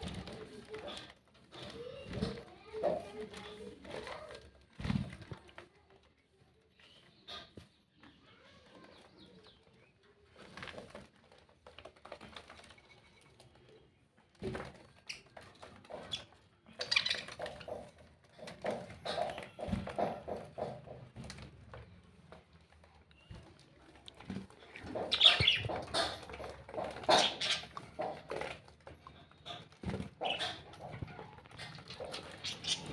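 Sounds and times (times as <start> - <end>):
parrot calling and chattering: 24.6 - 28.3, 30.2 - 32.9.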